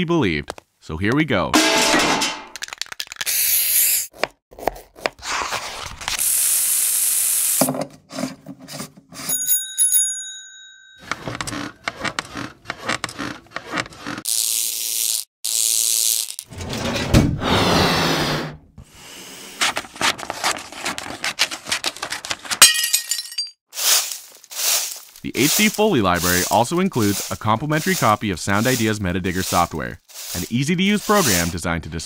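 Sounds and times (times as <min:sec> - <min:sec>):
ringing bell tone: 0:09.3 - 0:11.0
rustles: 0:23.8 - 0:28.9
scrapes: 0:23.8 - 0:31.6.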